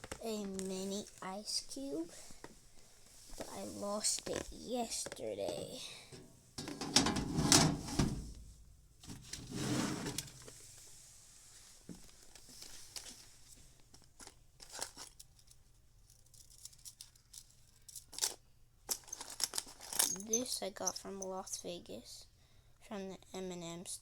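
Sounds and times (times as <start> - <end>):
plastic toy rustling: 0.0 - 6.0, 12.0 - 21.3.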